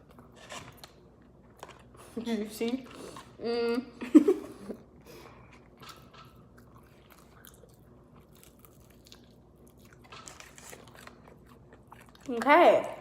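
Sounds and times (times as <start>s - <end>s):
faint chewing: 4.8s - 13.0s.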